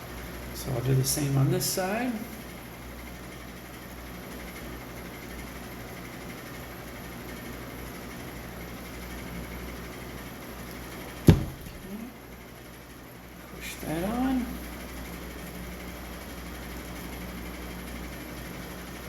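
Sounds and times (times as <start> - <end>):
low background hum: 0.0 - 19.0
sharp knock on workbench: 11.3 - 12.0.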